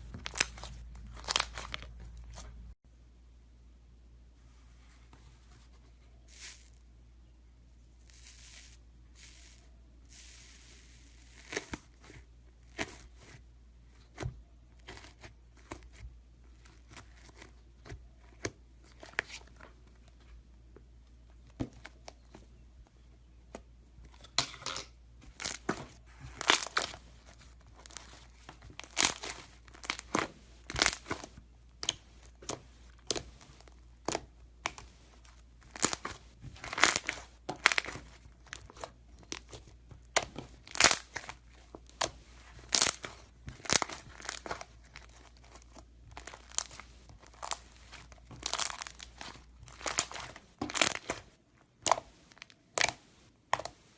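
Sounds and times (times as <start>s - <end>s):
crunchy slime crackling: 0.0s - 2.7s, 25.3s - 53.0s.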